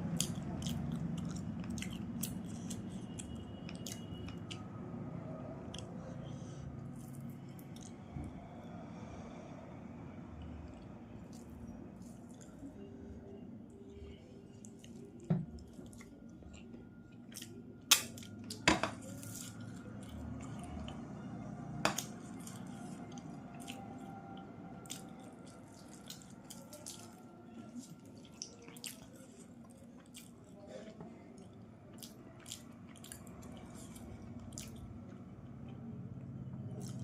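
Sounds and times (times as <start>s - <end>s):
wet chewing and lip smacks: 0.0s - 4.7s, 7.0s - 8.1s, 21.9s - 30.6s, 31.4s - 35.7s, 36.7s - 37.0s.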